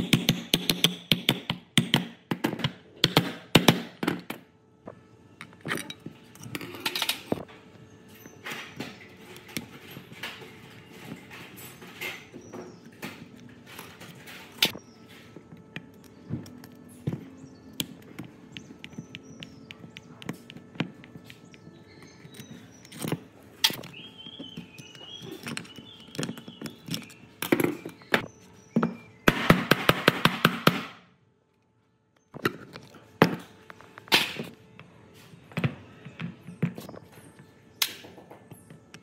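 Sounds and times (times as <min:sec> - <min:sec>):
tools and metal parts knocking: 0:15.4 - 0:28.2.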